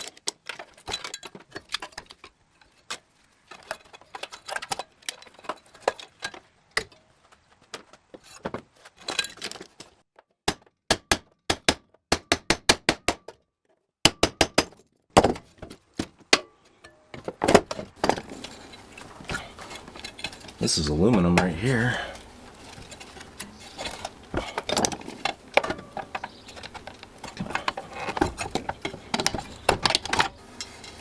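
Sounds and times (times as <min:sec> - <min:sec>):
sharp taps: 0:10.5 - 0:13.2, 0:14.1 - 0:14.7
tools and metal parts clinking: 0:18.0 - 0:31.0.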